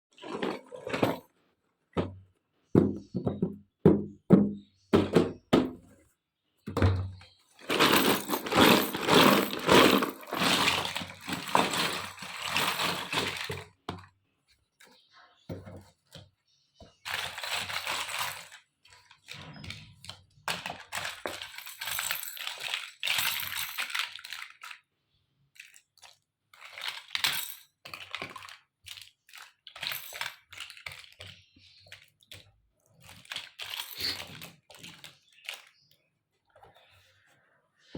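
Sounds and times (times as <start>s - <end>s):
plastic toy pieces clicking: 17.1s - 24.8s, 25.5s - 35.9s.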